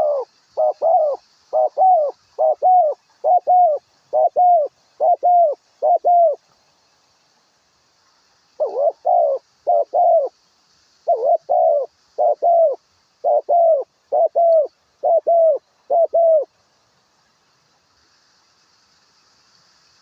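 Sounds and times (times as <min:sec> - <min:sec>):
dove cooing: 0:00.0 - 0:06.4, 0:08.6 - 0:10.3, 0:11.0 - 0:16.5
faint high hiss: 0:00.0 - 0:20.0.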